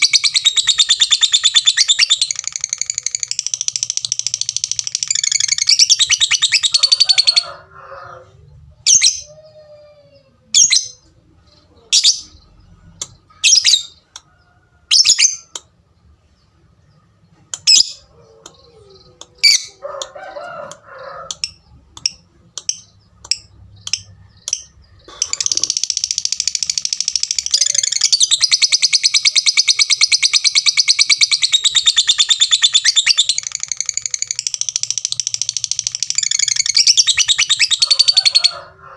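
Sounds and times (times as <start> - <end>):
lovebird rapid chattering song: 0.0 - 7.0, 21.3 - 38.4
lovebird sharp tik calls: 21.3 - 38.4.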